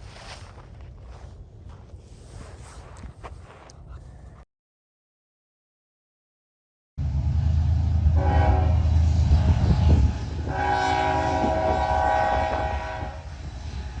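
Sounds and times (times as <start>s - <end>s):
locomotive air horn blasts: 7.9s - 14.0s.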